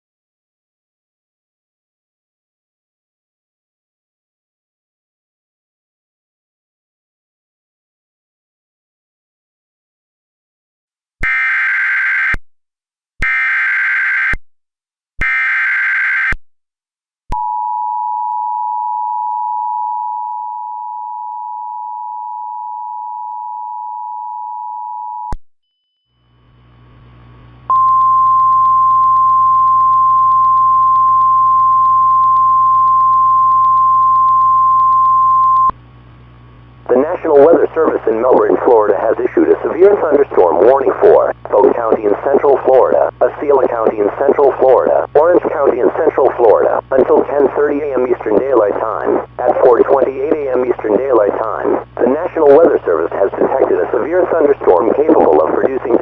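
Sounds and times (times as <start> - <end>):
buzzy data header tones: 11.2 - 12.4, 13.2 - 14.4, 15.2 - 16.4
steady warning alarm tone: 13.2 - 14.4, 15.2 - 16.4
radio hiss and hum: 36.4 - 56.0.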